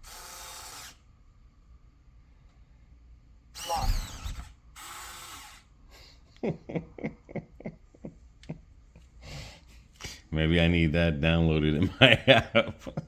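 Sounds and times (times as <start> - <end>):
lock motor whirring: 0.0 - 1.0, 3.6 - 5.7.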